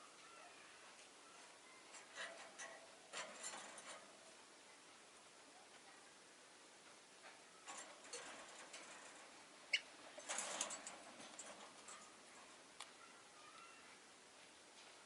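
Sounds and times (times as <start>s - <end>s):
birds clicking and rustling: 1.0s - 4.4s, 7.2s - 13.8s.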